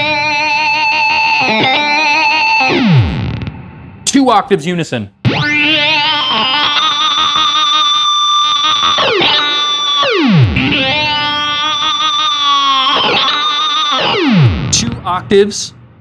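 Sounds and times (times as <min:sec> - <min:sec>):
synth guitar notes with pitch dives: 0:00.0 - 0:04.1, 0:05.2 - 0:16.0.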